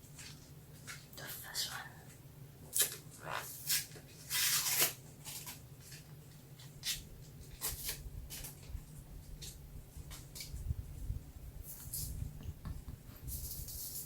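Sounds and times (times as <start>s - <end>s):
crisp crinkling and crackling: 2.7s - 10.6s.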